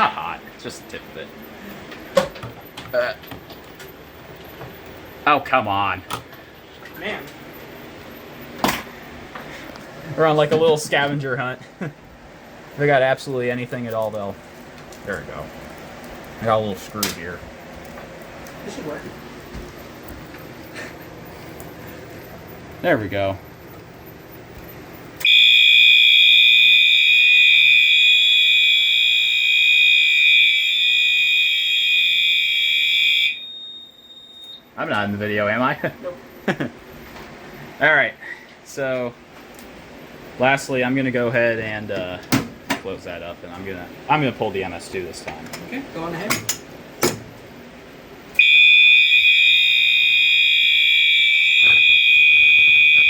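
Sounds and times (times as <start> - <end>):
high-pitched fire alarm tone: 25.2 - 34.7, 48.4 - 53.0.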